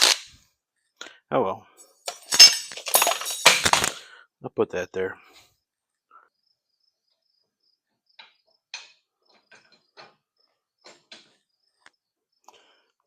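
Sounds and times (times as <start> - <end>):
objects knocking being set down: 2.1 - 4.0
cricket chirping: 5.6 - 12.7.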